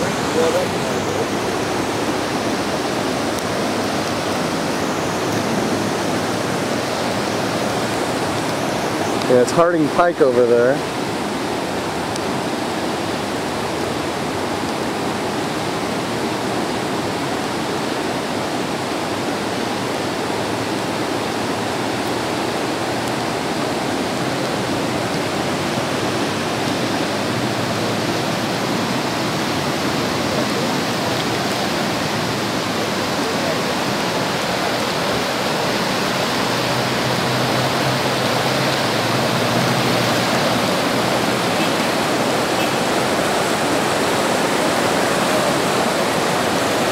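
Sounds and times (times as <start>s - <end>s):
floodwater rushing: 0.0s - 46.9s.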